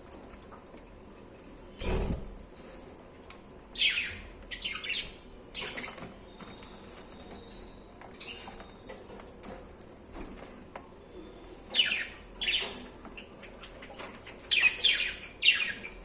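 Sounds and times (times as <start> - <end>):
faint budgerigar chirps: 11.7 - 16.0.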